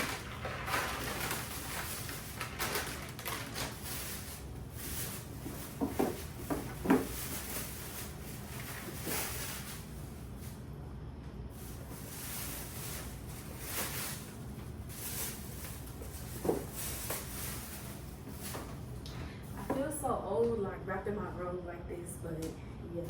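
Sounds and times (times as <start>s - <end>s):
packages rustling: 0.0s - 10.6s, 11.5s - 19.0s.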